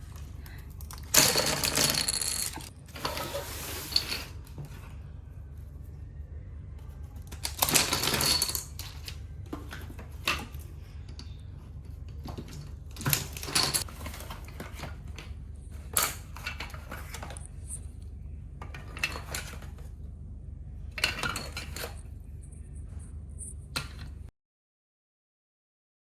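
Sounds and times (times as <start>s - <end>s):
steady low hum: 0.0s - 24.3s
plastic dominoes clacking: 0.8s - 2.7s.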